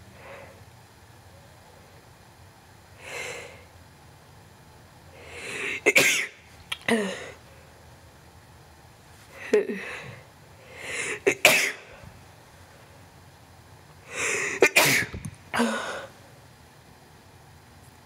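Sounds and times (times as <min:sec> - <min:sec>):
gasping intake of breath: 0:05.2 - 0:05.8, 0:09.8 - 0:11.3, 0:14.1 - 0:14.6
breathy sound: 0:09.4 - 0:11.2, 0:15.6 - 0:16.1
man sneezing: 0:11.0 - 0:11.9, 0:14.2 - 0:16.1.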